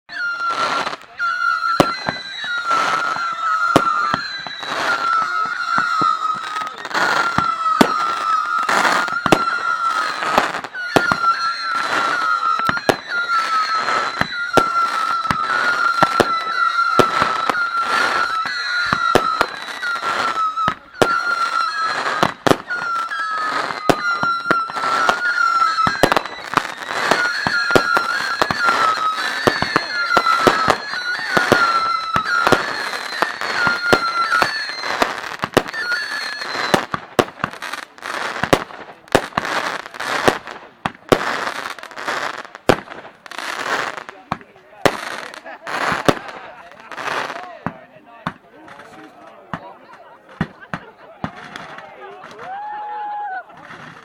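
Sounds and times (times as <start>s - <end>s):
high whistle: 0.1s - 40.5s
fireworks bangs and cracks: 0.1s - 54.0s.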